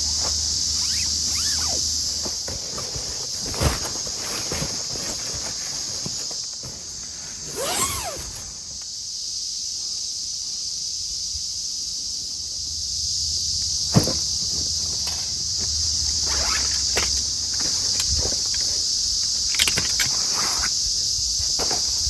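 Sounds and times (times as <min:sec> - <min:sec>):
insects chorus: 0:00.0 - 0:22.0
short squeak: 0:00.7 - 0:02.0.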